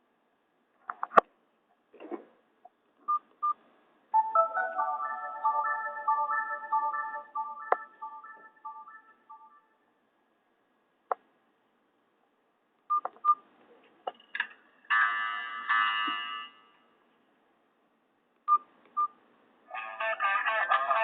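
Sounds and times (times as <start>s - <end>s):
phone tone: 4.2s - 9.6s.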